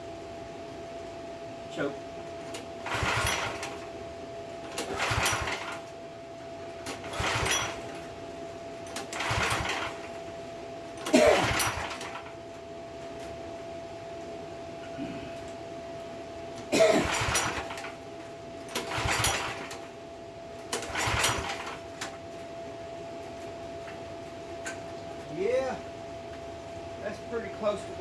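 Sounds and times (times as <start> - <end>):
engine turning over rattle: 2.4 - 4.0, 4.6 - 6.0, 6.8 - 8.2, 8.8 - 10.3, 10.9 - 12.4, 16.6 - 20.0, 20.6 - 22.2
recoil starter pulls: 2.5 - 3.9, 4.6 - 5.9, 6.8 - 8.1, 8.9 - 10.2, 11.0 - 12.4, 16.6 - 18.0, 18.7 - 19.9, 20.7 - 22.2.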